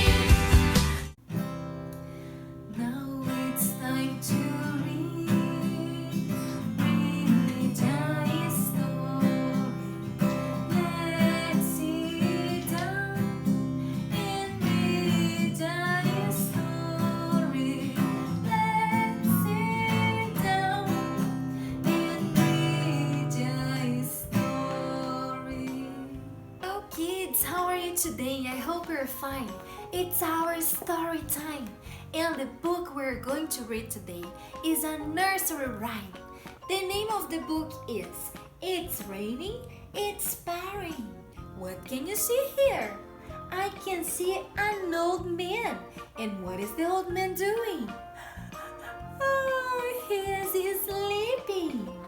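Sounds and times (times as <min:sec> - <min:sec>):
strummed acoustic guitar: 0:00.0 - 0:29.0
person singing: 0:02.8 - 0:27.4.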